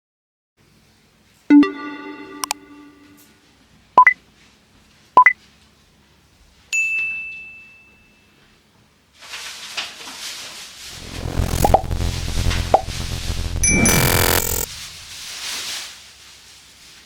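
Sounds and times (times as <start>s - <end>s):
electronic blips rising in pitch: 1.5s - 3.3s, 11.0s - 15.2s
ringing ding: 6.8s - 8.3s.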